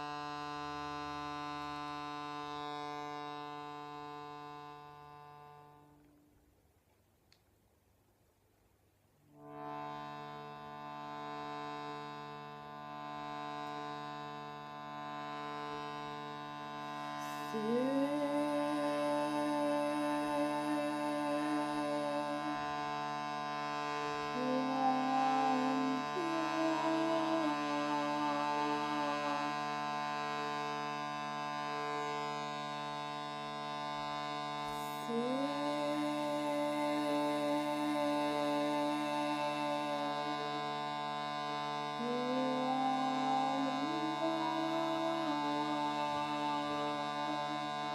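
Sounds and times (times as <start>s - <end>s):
shruti box drone: 0.0s - 6.2s, 9.4s - 47.9s
wordless voice singing held tones: 17.2s - 22.9s, 24.3s - 29.9s, 34.7s - 41.0s, 42.0s - 47.9s.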